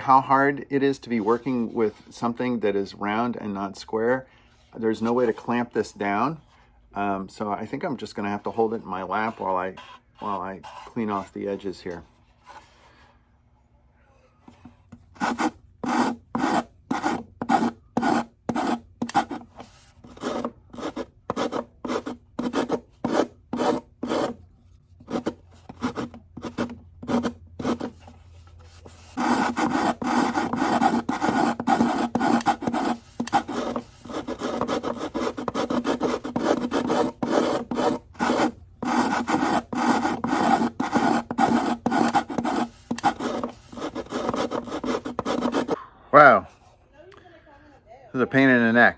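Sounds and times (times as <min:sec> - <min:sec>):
hand tool scraping wood: 0:08.2 - 0:13.0, 0:14.5 - 0:24.4, 0:25.0 - 0:45.8.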